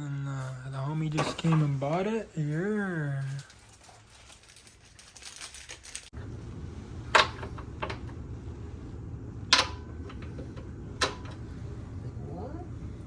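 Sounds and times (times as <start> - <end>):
steady low hum: 6.2 - 13.0.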